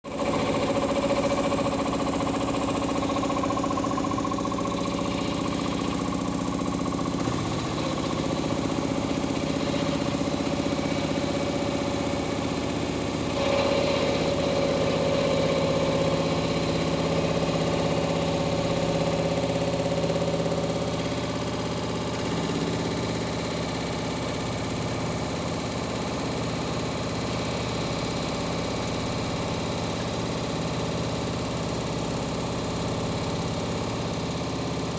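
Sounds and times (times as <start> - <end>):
washing machine hum: 0.0 - 34.9
fast pulsing rattle: 0.1 - 27.4.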